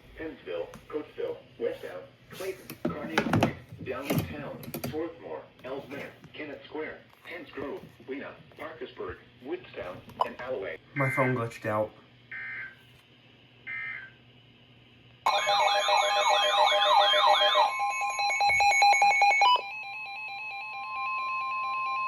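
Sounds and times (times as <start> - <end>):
warbling alarm: 13.7 - 14.1, 15.3 - 22.0.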